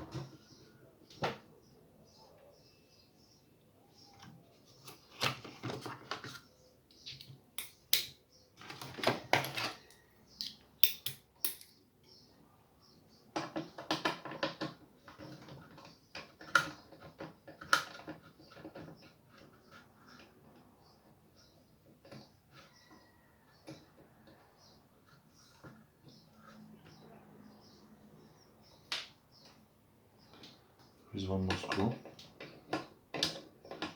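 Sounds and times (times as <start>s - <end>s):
sharp plastic clicks: 7.2s - 8.2s.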